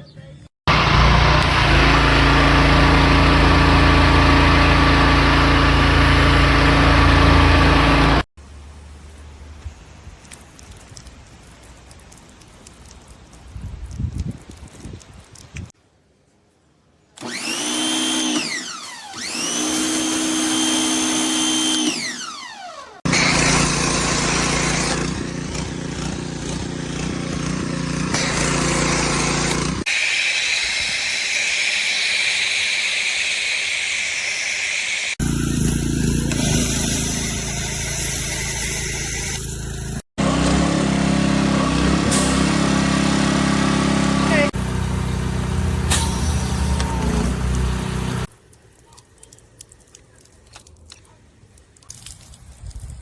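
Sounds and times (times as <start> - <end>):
pressure washer motor whine: 0.7 - 8.3, 17.2 - 48.3.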